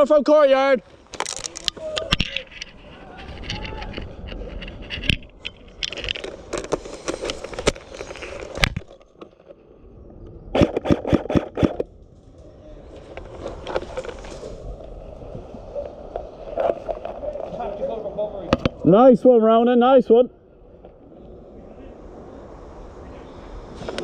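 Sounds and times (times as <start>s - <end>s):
rustling: 0.8s - 9.7s, 10.6s - 18.8s
airsoft rifle shots: 10.6s - 11.8s.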